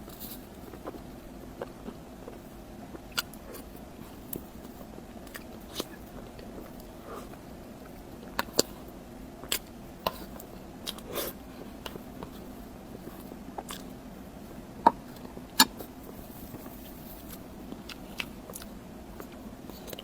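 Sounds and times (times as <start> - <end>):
wet mouth clicks while chewing: 3.0 - 3.7.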